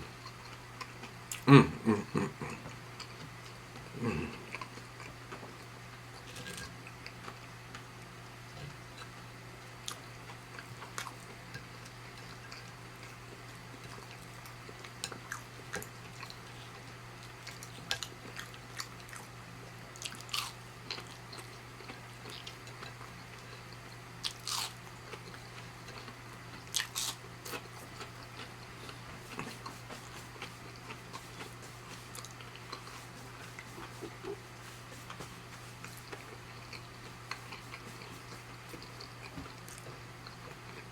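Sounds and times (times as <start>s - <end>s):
steady low hum: 0.0s - 40.9s
close chewing and biting: 20.0s - 40.9s.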